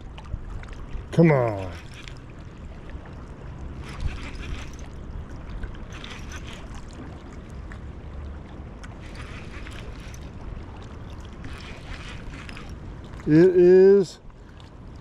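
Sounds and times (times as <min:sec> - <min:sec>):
low wind rumble: 0:00.0 - 0:15.0
river water flowing: 0:00.0 - 0:15.0
rustling: 0:03.8 - 0:04.9, 0:09.0 - 0:10.4.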